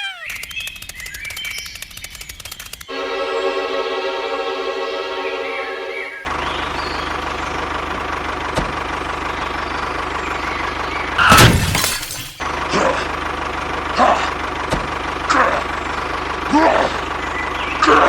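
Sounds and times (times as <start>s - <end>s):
small motor humming: 0.0s - 0.5s.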